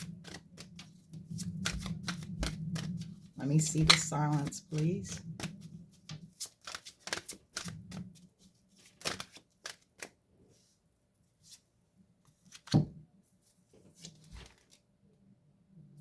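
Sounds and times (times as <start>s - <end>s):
cards flicking and snapping: 0.0s - 8.1s, 8.8s - 10.2s.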